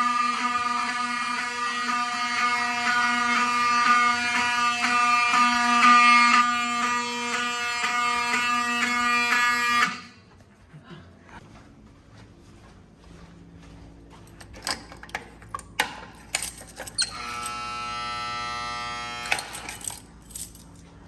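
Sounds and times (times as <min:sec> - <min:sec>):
fire alarm horn buzzing: 0:00.0 - 0:10.3, 0:16.9 - 0:20.6.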